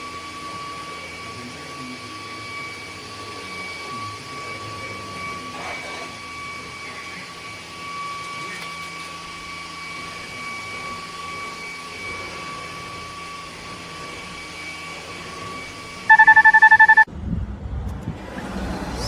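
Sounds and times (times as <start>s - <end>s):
vacuum motor whining: 0.0s - 16.8s
rapid loud beeps: 16.1s - 17.1s.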